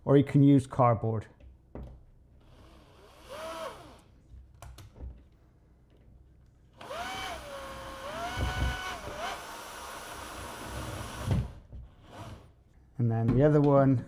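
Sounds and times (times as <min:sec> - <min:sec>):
cordless drill driving a screw: 0:02.4 - 0:04.1, 0:06.8 - 0:12.5.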